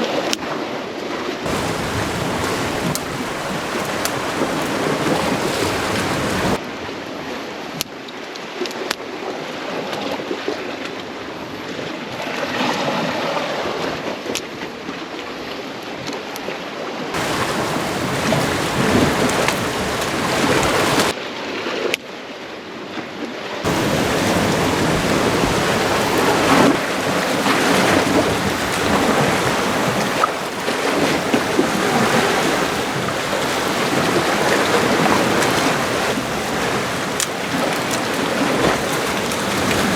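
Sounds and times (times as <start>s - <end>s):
wind: 1.4s - 39.9s
faint ticks: 1.5s - 6.4s
sea waves against rocks: 1.5s - 6.6s, 17.2s - 21.2s, 23.6s - 39.9s.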